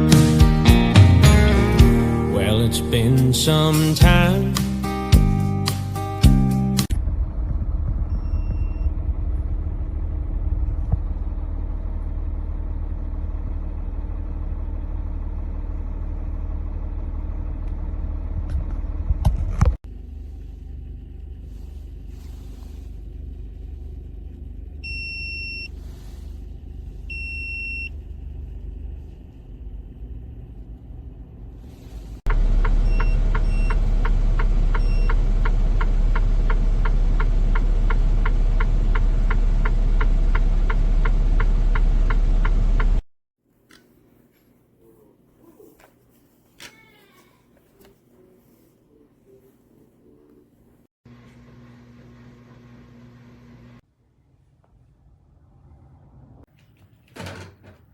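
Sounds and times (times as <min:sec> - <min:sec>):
car road and engine rumble: 0:06.8 - 0:43.0
low hum: 0:06.9 - 0:25.1, 0:25.7 - 0:43.0
fast even ticking: 0:32.3 - 0:43.0.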